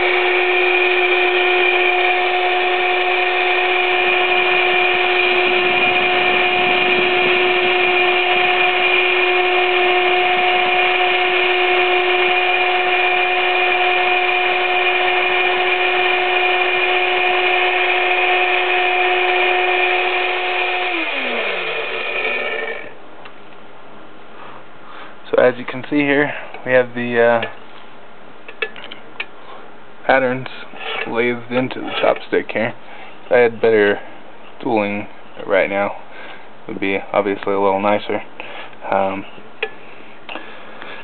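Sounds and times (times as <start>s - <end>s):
electric drill whining: 0.0s - 23.0s.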